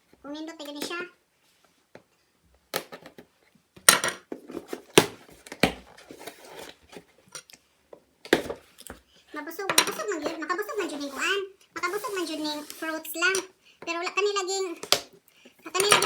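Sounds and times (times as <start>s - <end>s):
plastic parts clicking and knocking: 15.8s - 16.0s.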